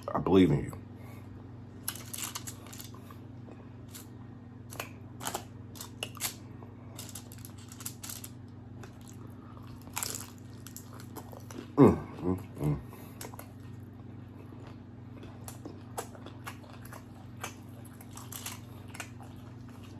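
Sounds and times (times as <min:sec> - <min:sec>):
steady low hum: 0:00.0 - 0:19.9
crunching bites and chewing: 0:04.7 - 0:19.9.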